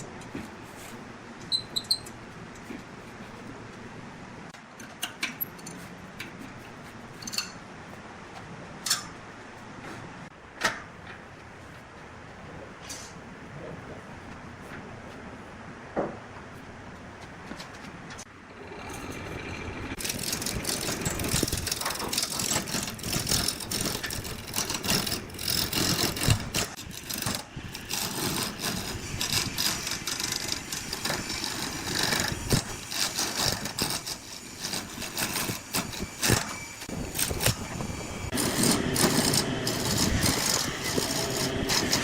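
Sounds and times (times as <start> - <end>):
chainsaw engine rattling: 18.4 - 42.0.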